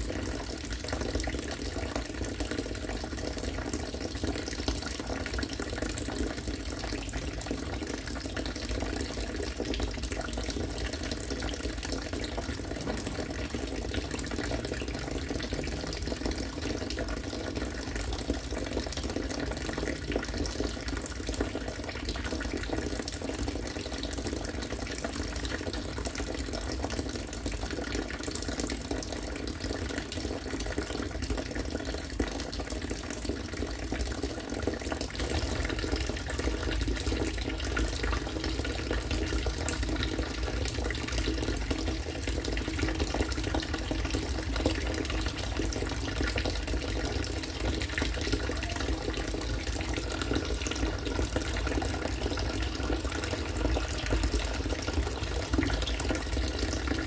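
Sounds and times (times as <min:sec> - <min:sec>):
water falling and splashing: 0:10.6 - 0:23.6, 0:35.0 - 0:57.0.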